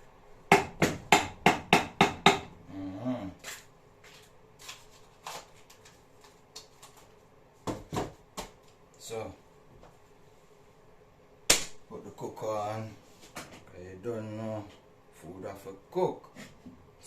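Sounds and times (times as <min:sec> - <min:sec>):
knife chopping on cutting board: 0:00.5 - 0:02.5.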